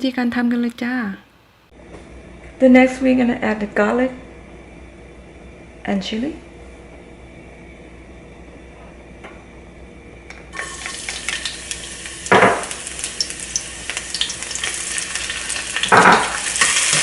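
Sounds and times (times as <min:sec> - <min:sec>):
garlic sizzling in hot oil: 0:10.5 - 0:17.0.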